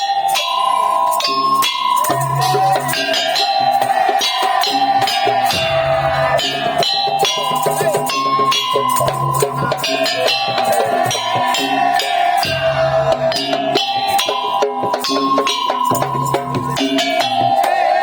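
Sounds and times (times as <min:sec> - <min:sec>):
drums beating dense rhythm: 0:00.0 - 0:18.0
held pitched melody notes: 0:00.0 - 0:18.0
percussion ensemble playing: 0:00.0 - 0:18.0.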